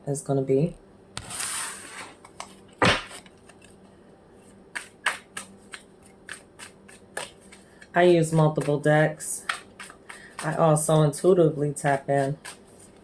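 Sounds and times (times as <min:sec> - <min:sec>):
card slapped down: 0:02.8 - 0:03.3
cards shuffling: 0:04.4 - 0:08.7.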